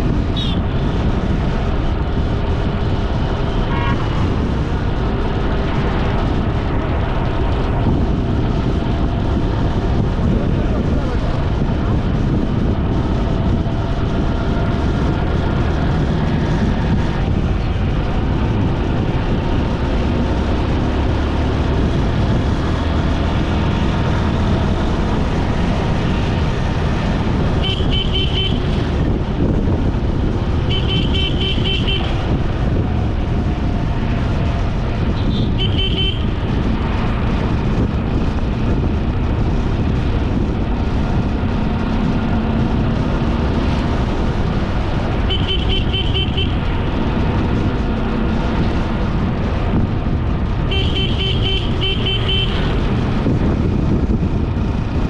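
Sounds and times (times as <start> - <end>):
motorbike engine rumble: 0.0 - 55.0
tyre and wind noise: 0.0 - 55.0
vehicle horn honking: 0.4 - 0.6, 27.6 - 28.7, 30.7 - 32.2, 35.2 - 36.3, 45.3 - 46.6, 50.7 - 52.7.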